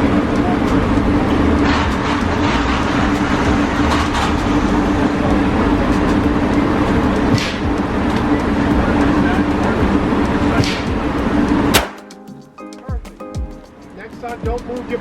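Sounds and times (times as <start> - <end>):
loud low drone: 0.0 - 8.0
muffled gunfire cracks: 11.7 - 12.1.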